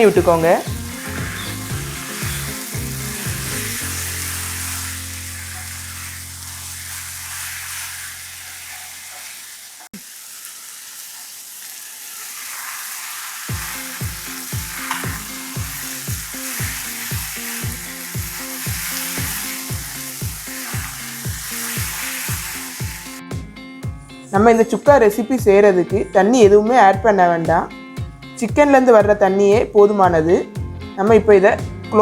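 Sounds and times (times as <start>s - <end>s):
background music: 0.0s - 7.4s, 13.5s - 32.0s
chicken sizzling in oil: 0.0s - 23.2s
stirring in a pan: 0.0s - 23.2s.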